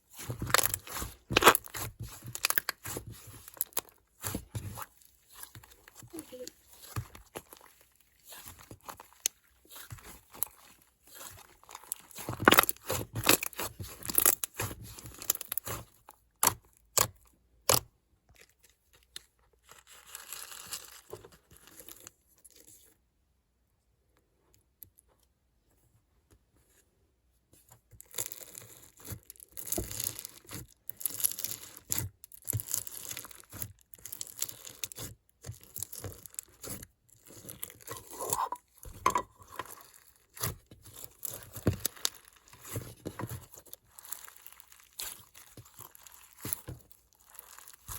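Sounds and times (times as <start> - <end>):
slime crackling and popping: 0.1 - 17.9, 28.0 - 38.8, 39.6 - 47.9.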